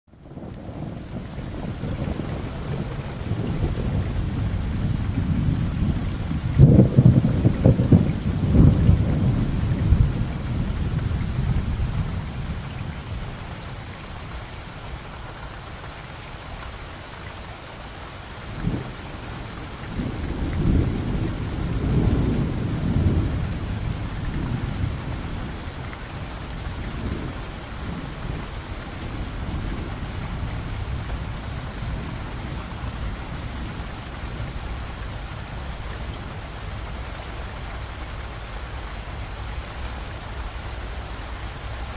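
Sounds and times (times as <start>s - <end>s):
thunder rumbling: 0.1s - 14.5s, 18.4s - 37.6s
steady rain: 0.1s - 41.9s.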